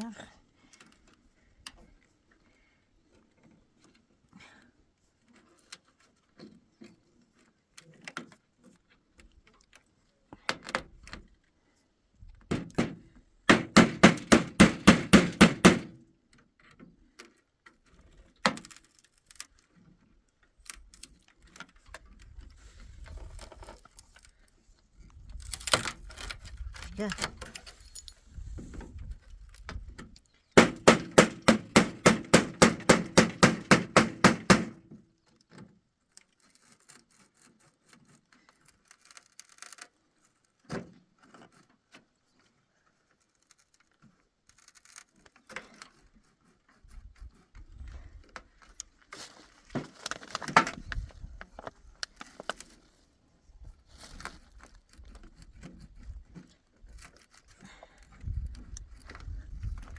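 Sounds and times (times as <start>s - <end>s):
wood handling noises: 12.4s - 16.0s, 25.3s - 35.0s, 48.3s - 52.9s
hammer striking wood: 12.5s - 16.0s, 30.6s - 34.9s.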